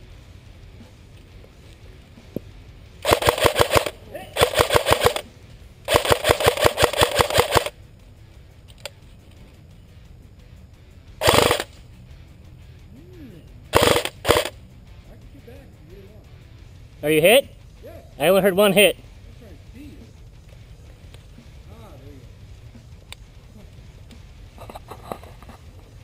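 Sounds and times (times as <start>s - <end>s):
airsoft gun firing full auto: 3.0s - 5.3s, 5.9s - 7.8s, 11.2s - 11.8s, 13.7s - 14.6s.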